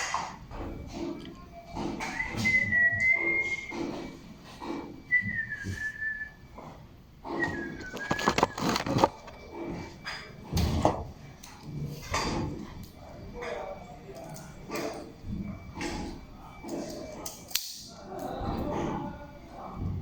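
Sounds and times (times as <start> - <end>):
person whistling a tune: 2.0 - 3.9, 5.1 - 6.5, 7.4 - 8.6.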